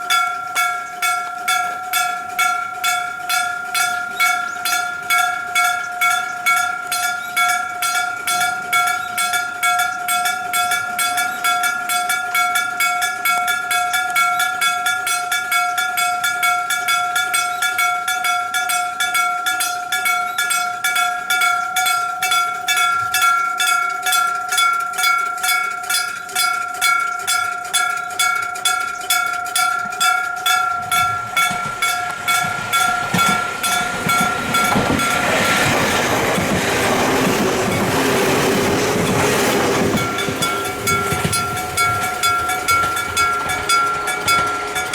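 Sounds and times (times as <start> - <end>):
level-crossing bell ringing: 0.0 - 44.9
train rumble: 26.3 - 44.9.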